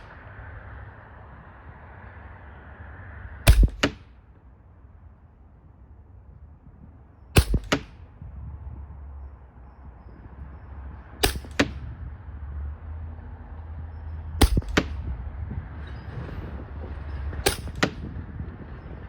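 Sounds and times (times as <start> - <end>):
air rifle shots: 3.5 - 4.2, 7.4 - 8.2, 11.2 - 11.8, 14.4 - 15.0, 17.4 - 18.1.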